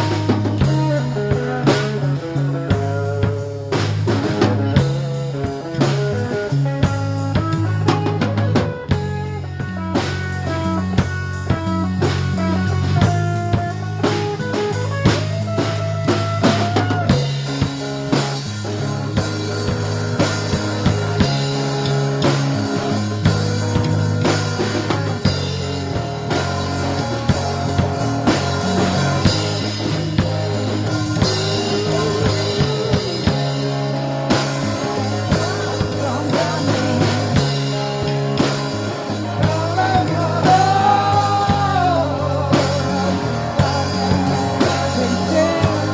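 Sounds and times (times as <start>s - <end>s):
bass guitar: 0.0s - 45.9s
drum kit with snare rimshots: 0.0s - 45.9s
electric guitar lead with bent notes: 0.0s - 45.9s.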